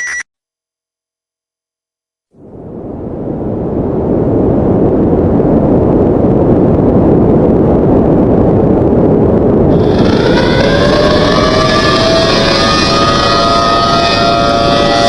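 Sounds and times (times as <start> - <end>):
loud low roaring noise: 2.4 - 15.0
rising siren: 9.7 - 15.0.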